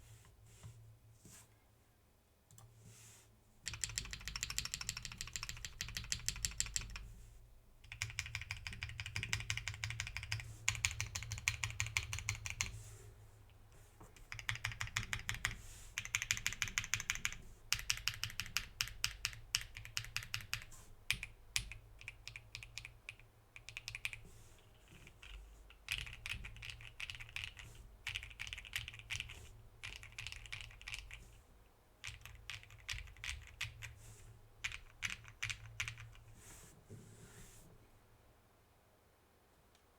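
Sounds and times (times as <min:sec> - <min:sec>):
fast typing on mechanical keyboard: 0:03.7 - 0:07.0, 0:07.8 - 0:12.7, 0:14.2 - 0:24.2, 0:24.8 - 0:31.4, 0:32.0 - 0:34.0, 0:34.6 - 0:36.3.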